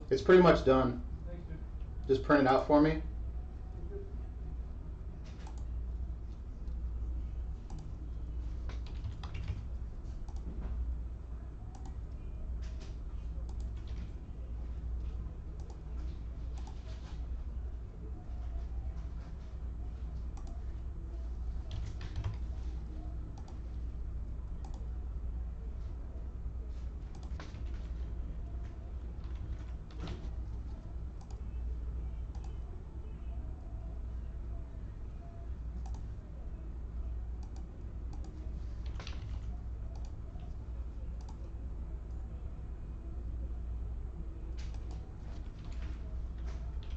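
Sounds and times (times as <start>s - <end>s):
steady low hum: 0.0s - 46.9s
keyboard typing clicks: 5.3s - 5.7s, 7.6s - 8.0s, 8.6s - 10.5s, 11.7s - 14.1s, 15.6s - 15.8s, 16.5s - 16.9s, 20.3s - 20.6s, 21.6s - 23.6s, 24.5s - 24.9s, 27.1s - 27.9s, 29.2s - 31.5s, 32.2s - 32.6s, 35.8s - 36.1s, 37.4s - 40.6s, 41.2s - 41.4s, 44.6s - 45.8s.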